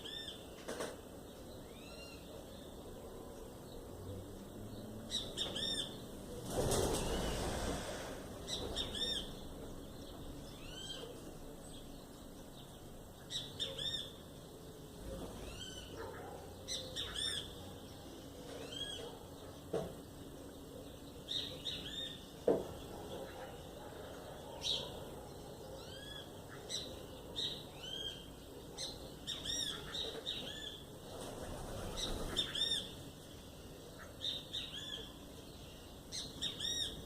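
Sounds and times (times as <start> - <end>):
thrushes chirping: 0.0 - 37.0
burst of rushing noise: 6.5 - 8.8.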